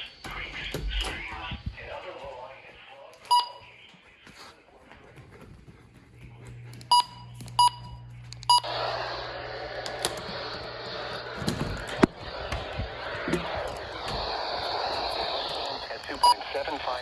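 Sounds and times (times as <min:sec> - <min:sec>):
radio static hiss: 0:00.0 - 0:04.7, 0:08.6 - 0:17.0
electronic key beeps: 0:03.3 - 0:03.7, 0:06.9 - 0:08.7, 0:16.1 - 0:16.6.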